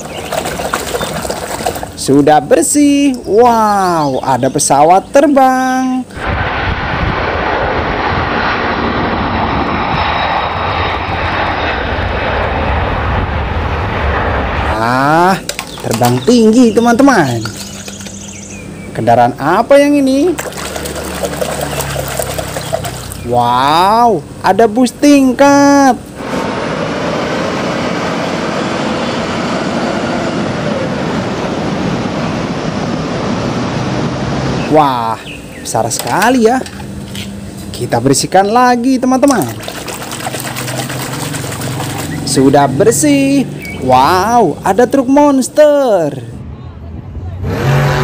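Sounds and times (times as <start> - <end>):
water spraying: 0.0 - 2.1, 15.3 - 18.4, 20.0 - 23.4, 39.2 - 43.0
airplane engine drone: 0.0 - 48.0.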